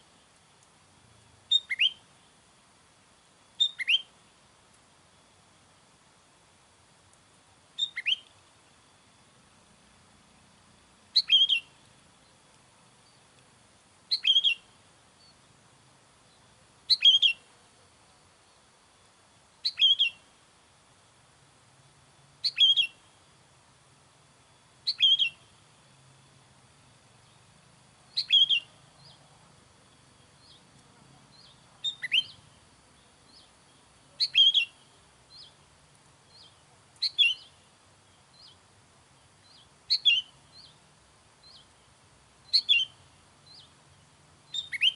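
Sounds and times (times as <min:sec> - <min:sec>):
bulbul whistled calls: 0:01.5 - 0:02.1, 0:03.6 - 0:04.2, 0:07.8 - 0:08.3, 0:11.1 - 0:11.8, 0:14.1 - 0:15.4, 0:16.3 - 0:17.5, 0:19.6 - 0:20.2, 0:22.4 - 0:23.1, 0:24.8 - 0:25.5, 0:28.1 - 0:29.3, 0:30.2 - 0:30.7, 0:31.3 - 0:32.6, 0:33.3 - 0:35.6, 0:36.3 - 0:38.6, 0:39.2 - 0:40.8, 0:41.4 - 0:41.8, 0:42.4 - 0:44.9.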